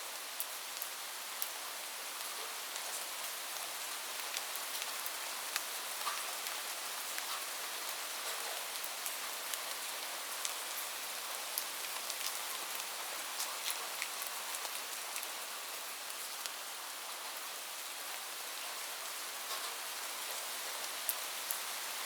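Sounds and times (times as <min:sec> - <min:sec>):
steady rain hiss: 0:00.0 - 0:22.0
raindrops ticking close by: 0:02.2 - 0:16.6.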